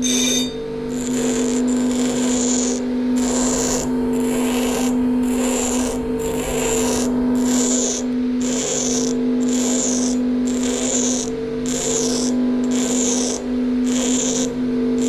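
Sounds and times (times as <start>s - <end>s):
bench grinder humming: 0.0s - 15.0s
metal grinding hiss: 2.2s - 11.1s.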